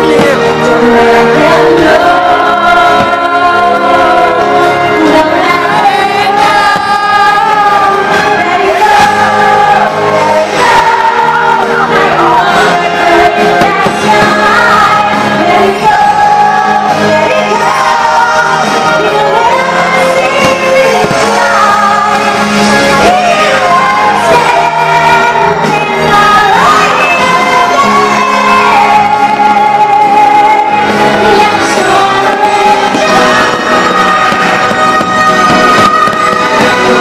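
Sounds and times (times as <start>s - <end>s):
choir singing: 0.0s - 37.0s
sung vocals: 0.0s - 37.0s.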